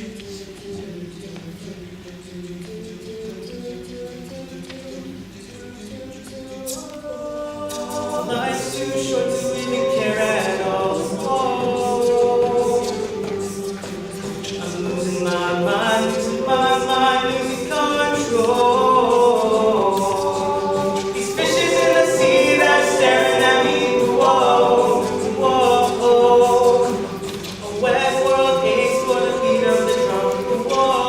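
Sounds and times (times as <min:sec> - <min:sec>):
a cappella group singing: 0:00.0 - 0:31.0.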